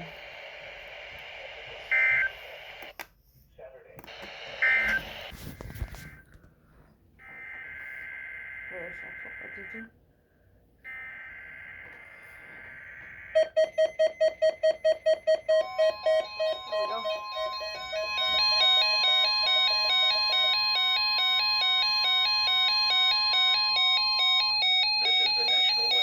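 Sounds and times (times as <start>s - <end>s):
warning alarm tone: 1.8s - 2.4s, 4.5s - 5.3s, 7.2s - 9.9s, 10.9s - 26.0s
rapid electronic beeps: 13.4s - 23.2s
stepped electronic beeping tune: 14.9s - 21.4s
warbling data tones: 15.3s - 23.2s.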